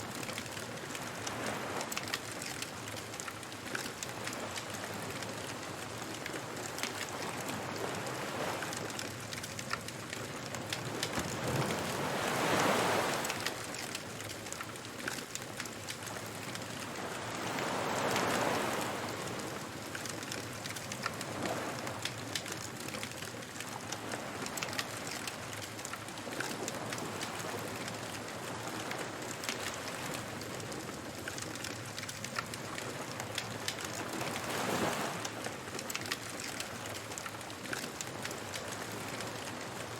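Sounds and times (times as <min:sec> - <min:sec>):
waves washing onto shore: 0:00.0 - 0:39.9
fire crackling: 0:00.1 - 0:28.5.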